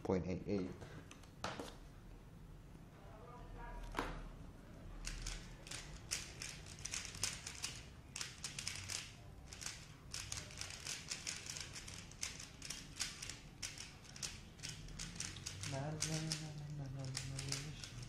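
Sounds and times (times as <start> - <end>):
speed cube plastic clicks: 5.1 - 18.0.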